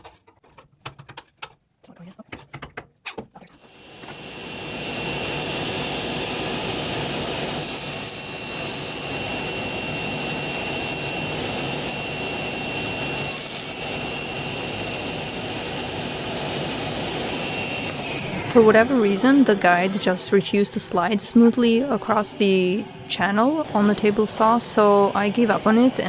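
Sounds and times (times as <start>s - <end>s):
table saw motor whine: 3.6s - 20.4s.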